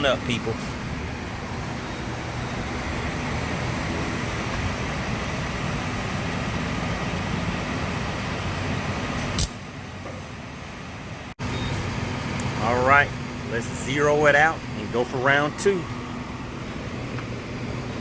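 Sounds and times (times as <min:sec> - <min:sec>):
fuel nozzle sharp click: 0:09.4 - 0:09.6.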